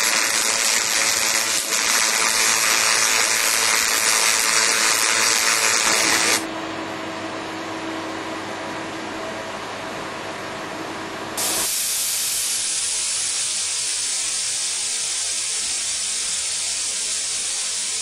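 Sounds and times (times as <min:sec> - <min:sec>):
welding arc hissing: 0:00.0 - 0:06.5, 0:11.4 - 0:18.0.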